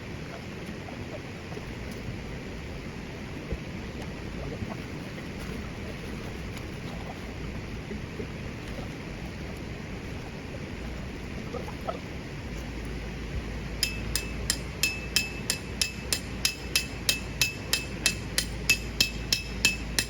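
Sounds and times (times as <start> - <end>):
steady background rush: 13.7 - 20.0
hammer striking metal tent pegs: 13.8 - 20.0.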